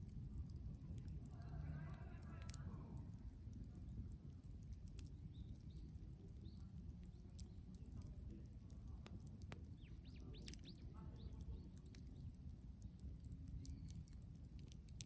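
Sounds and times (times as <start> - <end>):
bonfire embers ticking and popping: 0.0 - 15.0
bird chirps: 9.8 - 11.7.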